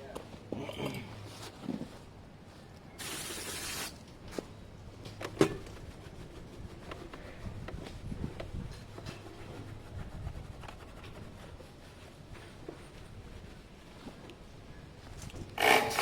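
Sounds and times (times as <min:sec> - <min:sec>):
aerosol can spraying: 0:03.0 - 0:04.0.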